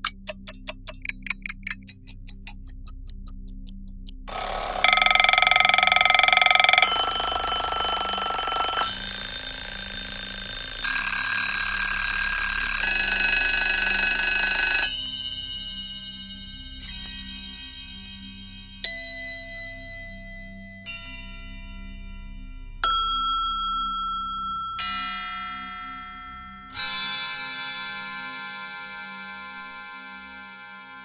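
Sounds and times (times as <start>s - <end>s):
clock ticking: 0.0s - 14.9s
mechanical alarm clock bells ringing: 4.3s - 15.6s.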